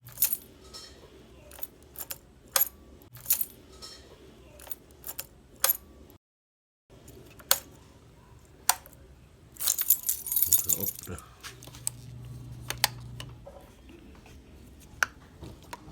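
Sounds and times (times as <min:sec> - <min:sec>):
small metal objects clinking: 0:09.6 - 0:11.2.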